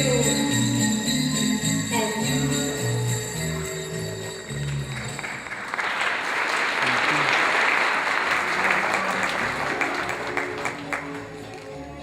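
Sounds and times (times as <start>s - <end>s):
audience applauding: 4.6s - 11.6s
faint music: 8.6s - 12.0s.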